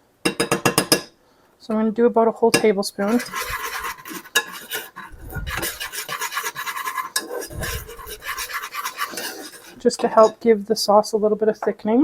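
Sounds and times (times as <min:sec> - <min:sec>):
utensil scraping bottom of pan: 0:03.0 - 0:10.4.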